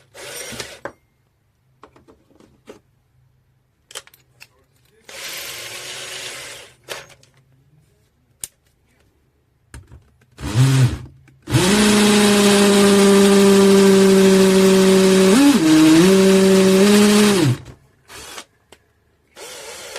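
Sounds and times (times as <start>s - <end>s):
cordless drill whining: 0.0s - 0.8s, 10.4s - 18.5s, 19.4s - 19.9s
drill clicks: 10.4s - 18.5s.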